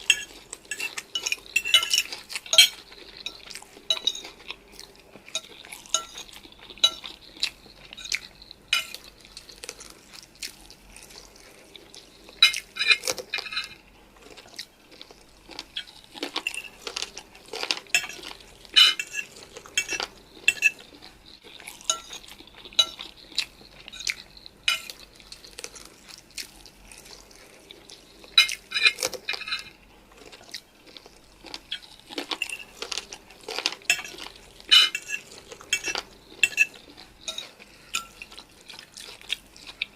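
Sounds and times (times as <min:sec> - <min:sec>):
cutlery clinking on a dish: 0:00.0 - 0:04.5, 0:05.3 - 0:09.1, 0:12.4 - 0:13.8, 0:15.8 - 0:25.0, 0:28.4 - 0:29.8, 0:32.3 - 0:38.4.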